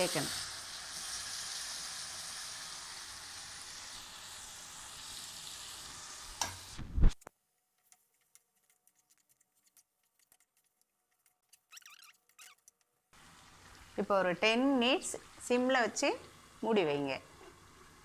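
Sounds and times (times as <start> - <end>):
food sizzling in a frying pan: 0.0 - 7.2, 13.2 - 18.0.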